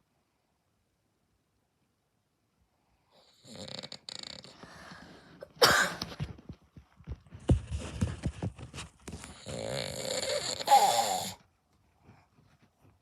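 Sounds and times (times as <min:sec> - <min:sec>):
man snoring: 0:03.4 - 0:04.6, 0:09.4 - 0:11.4.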